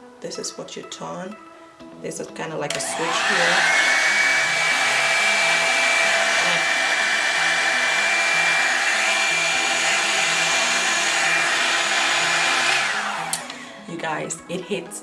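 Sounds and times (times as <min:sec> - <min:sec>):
hair dryer brush running: 0:02.7 - 0:14.0.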